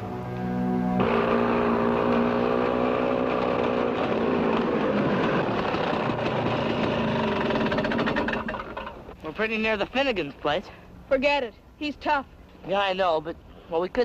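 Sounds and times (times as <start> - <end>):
motor engine running: 0.0 - 9.2.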